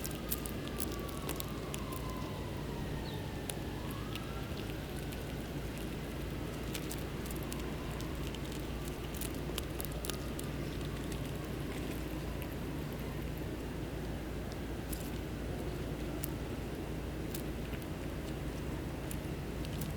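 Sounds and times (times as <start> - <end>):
small sharp ticks: 0.0 - 2.4, 17.3 - 19.9
steady low rumble: 0.0 - 19.9
distant siren wavering: 0.1 - 14.8.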